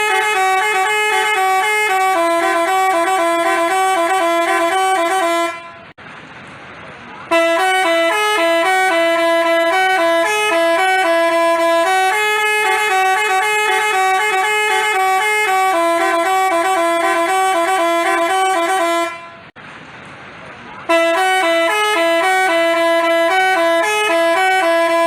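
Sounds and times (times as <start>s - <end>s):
multi-tone bus horn melody: 0.0s - 6.0s, 7.2s - 19.6s, 20.8s - 25.0s.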